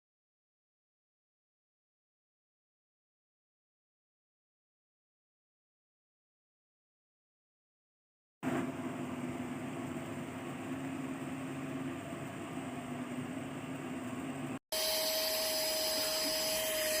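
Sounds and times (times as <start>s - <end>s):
vacuum cleaner motor whine: 14.7s - 17.0s.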